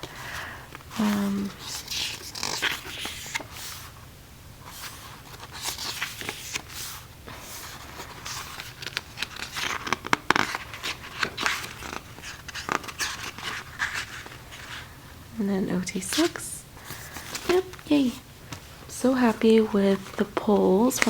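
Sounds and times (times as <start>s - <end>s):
paper and plastic rustling: 0.0s - 4.0s, 4.6s - 15.0s, 15.8s - 21.0s
cards sliding and tapping: 4.7s - 14.8s.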